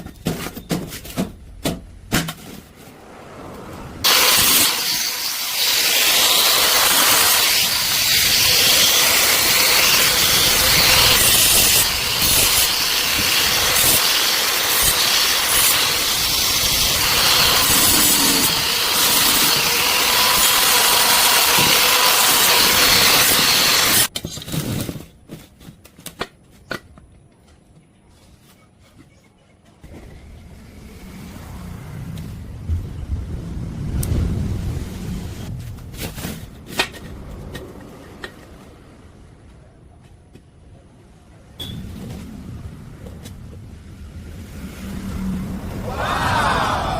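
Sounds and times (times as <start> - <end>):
welding arc crackling hiss: 4.1 - 24.1.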